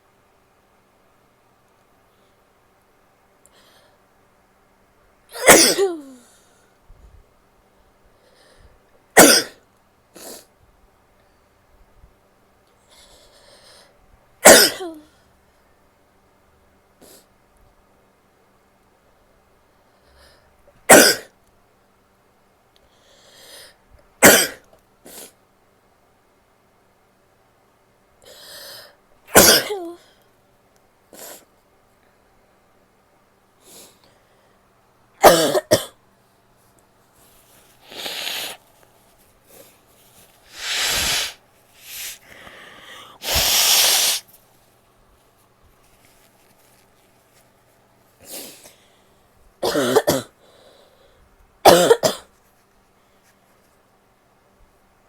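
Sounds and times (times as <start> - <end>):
woman coughing: 5.3 - 6.2, 9.2 - 9.6, 14.4 - 15.1, 20.9 - 21.3, 24.2 - 24.6, 29.3 - 30.0, 35.2 - 36.0, 49.6 - 50.4, 51.6 - 52.3
woman sneezing: 5.3 - 6.2, 14.5 - 15.1, 29.3 - 30.0, 40.5 - 42.2, 43.1 - 44.2
nose blowing: 37.8 - 38.6, 40.5 - 42.4, 43.0 - 44.3.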